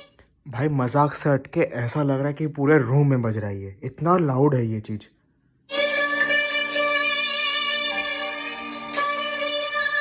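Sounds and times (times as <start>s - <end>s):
music with long held notes: 5.7s - 10.0s.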